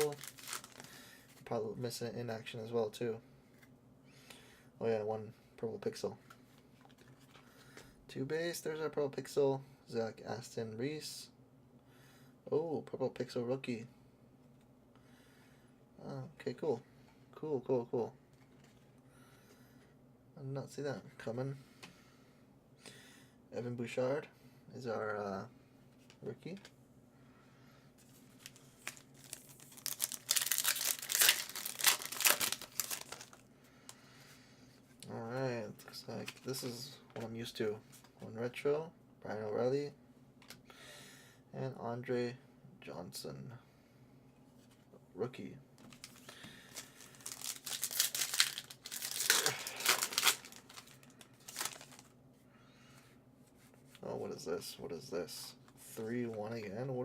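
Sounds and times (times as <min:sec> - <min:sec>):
wrapper tearing and crinkling: 0:00.0 - 0:00.9, 0:28.3 - 0:33.4, 0:45.9 - 0:52.1.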